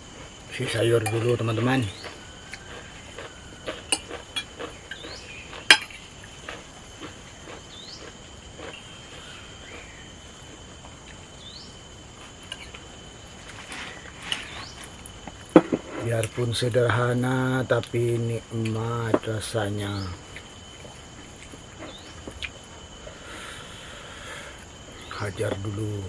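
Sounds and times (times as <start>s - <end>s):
high insect trill: 0.0s - 26.0s
dishes and utensils clinking: 1.0s - 2.2s.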